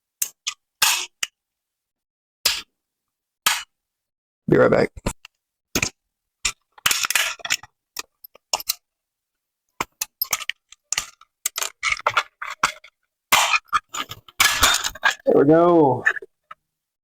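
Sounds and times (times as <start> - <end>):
plastic case clicking and scraping: 9.8 - 15.2.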